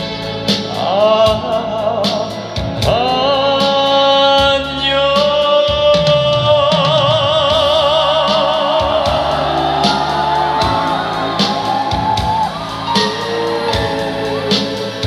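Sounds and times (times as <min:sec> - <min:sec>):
man singing with vibrato: 0:00.0 - 0:12.1, 0:12.8 - 0:15.0
band playing: 0:00.0 - 0:15.0
drum hits: 0:05.8 - 0:15.0
sliding melody line: 0:06.0 - 0:15.0.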